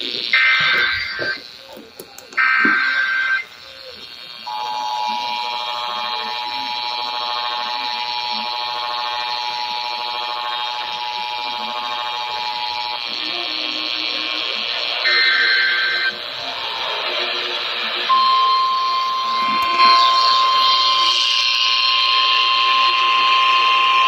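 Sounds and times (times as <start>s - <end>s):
radio hiss: 0.0s - 24.0s
two-tone alert signal: 18.1s - 24.0s.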